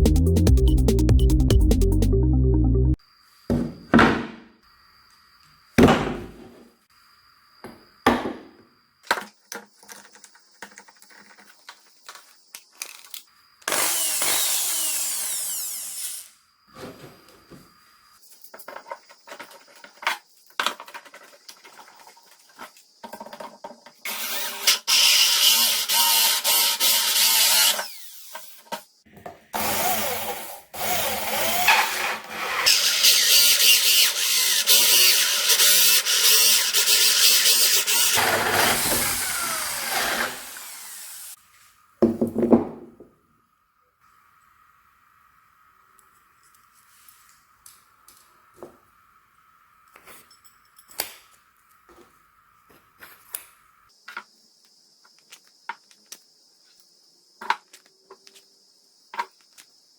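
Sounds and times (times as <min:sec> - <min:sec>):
electric power drill running: 0:13.7 - 0:16.3, 0:24.1 - 0:28.6, 0:29.6 - 0:41.4.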